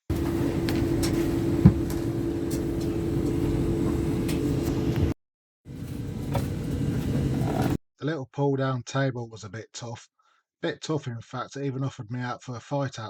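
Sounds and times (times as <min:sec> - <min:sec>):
train equipment hum: 0:00.1 - 0:07.8.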